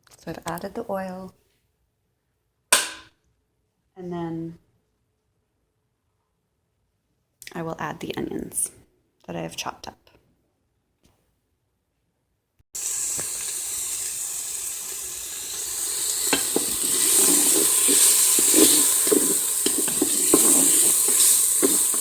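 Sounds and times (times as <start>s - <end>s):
onions sizzling in hot oil: 12.8s - 22.0s
utensil stirring and scraping pot: 15.5s - 22.0s.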